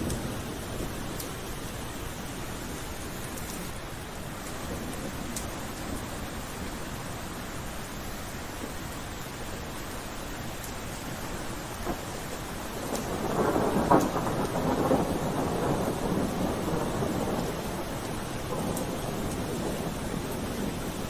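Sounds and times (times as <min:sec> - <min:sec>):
steady rain: 0:00.0 - 0:21.0
thunder rolling: 0:11.8 - 0:21.0.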